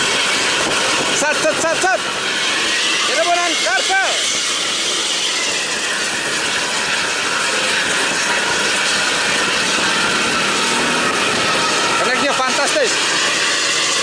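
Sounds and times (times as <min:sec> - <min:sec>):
faint high whine: 0:00.0 - 0:14.0.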